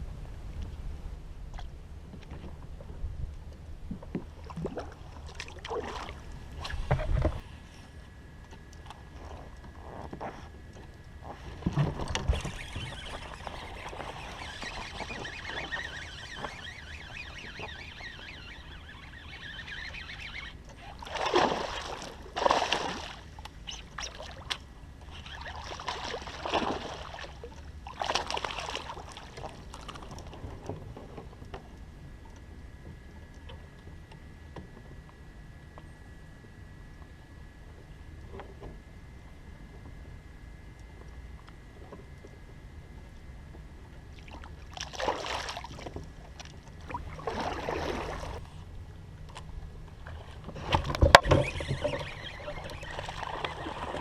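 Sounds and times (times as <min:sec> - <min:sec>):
faint high whine: 0:00.0 - 0:54.0
water sloshing and splashing: 0:03.8 - 0:07.4, 0:08.6 - 0:31.8, 0:44.1 - 0:54.0.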